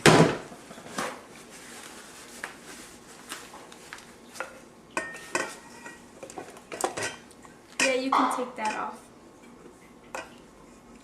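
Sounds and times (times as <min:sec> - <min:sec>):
kitchenware clicking and knocking: 0:07.8 - 0:08.9.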